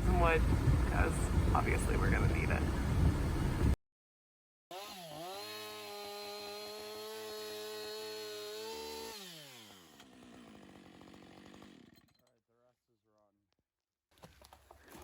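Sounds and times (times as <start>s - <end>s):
chainsaw running: 4.7s - 12.1s.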